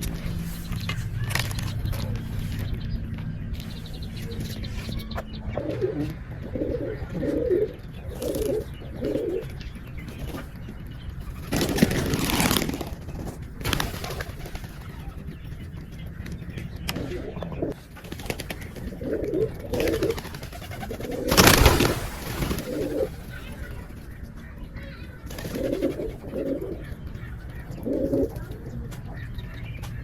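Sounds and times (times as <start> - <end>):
pigeons cooing: 0.0 - 30.0
loud rustling burst: 11.4 - 14.8, 20.0 - 23.6.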